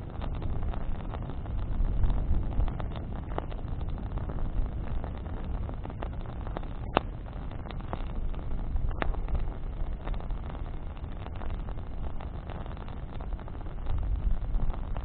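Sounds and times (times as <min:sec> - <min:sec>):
campfire low rumble: 0:00.0 - 0:15.0
fire crackling and popping: 0:00.0 - 0:15.0.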